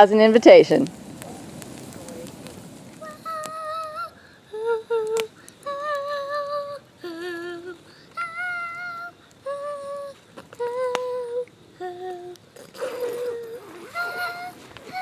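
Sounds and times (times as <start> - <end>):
high voice singing slow tune: 3.0 - 15.0.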